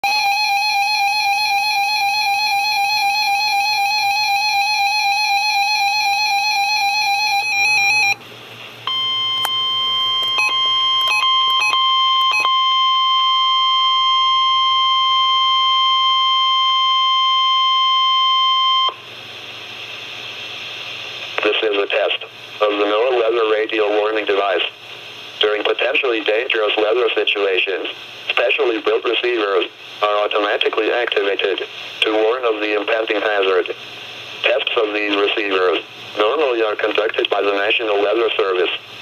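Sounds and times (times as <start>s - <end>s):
rapidly warbling electronic alarm: 0.0s - 8.2s, 8.9s - 19.0s
steady warning alarm tone: 0.0s - 8.2s, 8.9s - 19.0s.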